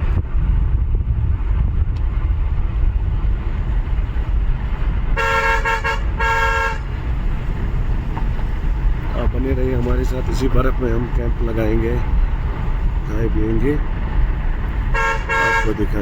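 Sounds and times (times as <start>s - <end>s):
car driving rumble: 0.0s - 16.0s
vehicle horn blasts: 5.1s - 7.0s, 14.9s - 16.0s.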